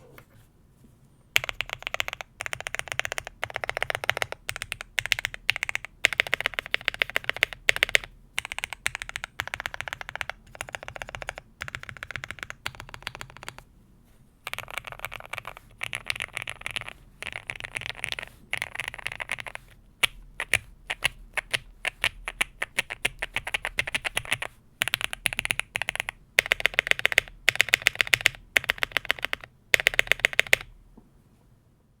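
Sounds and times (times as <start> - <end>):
typing on mechanical keyboard: 1.4 - 13.6, 14.5 - 30.7.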